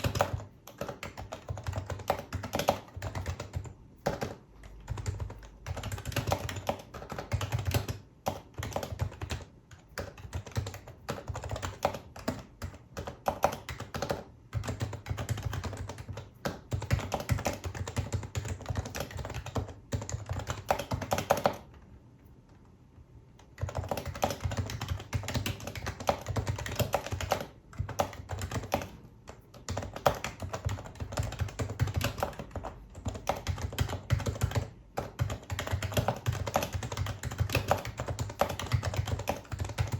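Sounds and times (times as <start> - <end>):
soft keyboard typing: 0.0 - 22.7, 23.3 - 39.9.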